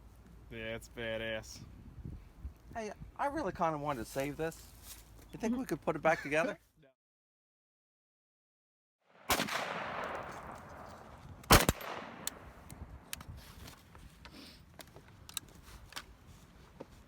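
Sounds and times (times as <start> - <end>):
explosive gunshot blasts: 9.2 - 10.8, 11.5 - 12.5
rolling echo: 9.2 - 13.1.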